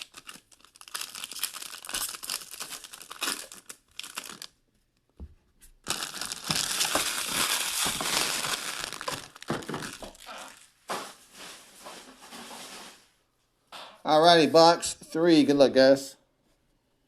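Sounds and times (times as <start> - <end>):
plastic wrapping crinkling: 0.0 - 4.6, 5.8 - 13.1.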